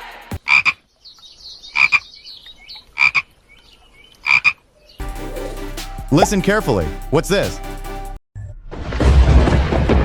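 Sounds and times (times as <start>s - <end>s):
frog croaking: 0.4s - 0.8s, 1.7s - 2.0s, 3.0s - 3.3s, 4.2s - 4.6s.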